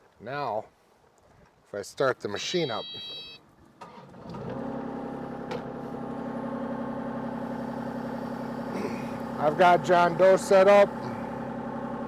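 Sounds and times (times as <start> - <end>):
diesel engine starting and idling: 3.8 - 12.0.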